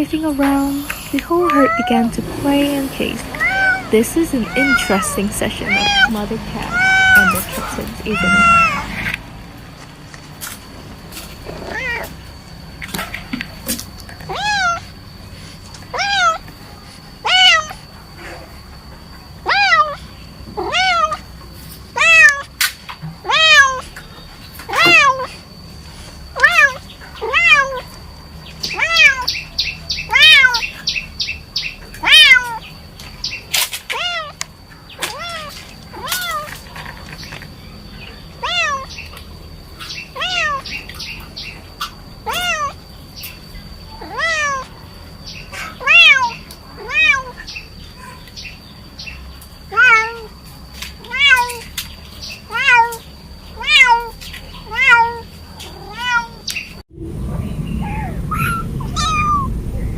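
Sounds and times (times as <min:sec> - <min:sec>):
faint high whine: 0:00.0 - 0:21.8, 0:55.4 - 0:59.9
kittens meowing: 0:00.4 - 0:09.2, 0:11.4 - 0:12.3, 0:14.1 - 0:15.0, 0:15.7 - 0:16.6, 0:17.2 - 0:18.5, 0:19.4 - 0:22.6, 0:23.2 - 0:23.9, 0:24.6 - 0:25.4, 0:26.3 - 0:28.0, 0:28.6 - 0:32.7, 0:33.9 - 0:36.6, 0:38.3 - 0:39.2, 0:39.8 - 0:42.8, 0:44.0 - 0:44.8, 0:45.4 - 0:47.6, 0:49.7 - 0:50.3, 0:51.0 - 0:51.7, 0:52.3 - 0:56.8, 0:57.6 - 0:59.9.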